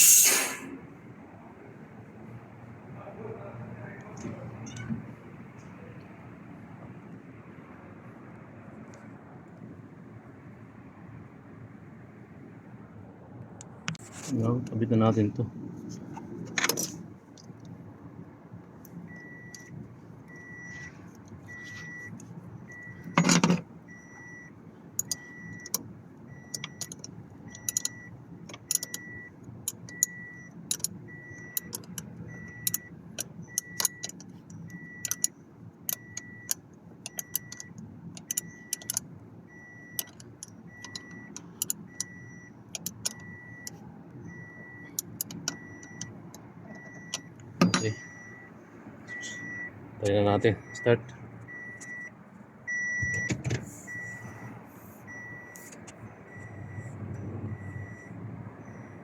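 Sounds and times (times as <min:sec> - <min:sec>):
metallic clicks and taps: 0:39.9 - 0:43.8, 0:44.9 - 0:48.0
high electronic beep: 0:46.8 - 0:48.5, 0:49.1 - 0:49.7, 0:55.1 - 0:59.0.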